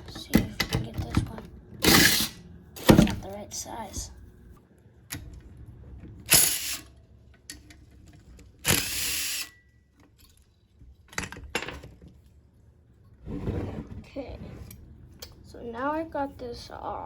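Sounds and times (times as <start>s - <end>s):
tool ratcheting bursts: 6.3s - 6.9s, 8.6s - 9.5s.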